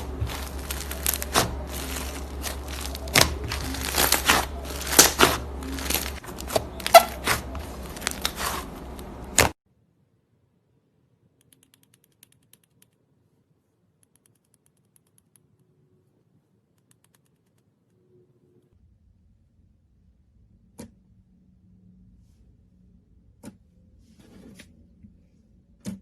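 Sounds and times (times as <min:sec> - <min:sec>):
slime crackling and popping: 0:00.0 - 0:09.6.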